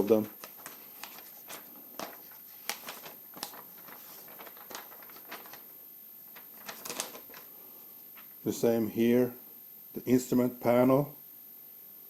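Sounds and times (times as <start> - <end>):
paper pages rustling: 0.0 - 7.5
paper pages clicking: 0.4 - 5.6, 6.4 - 7.4.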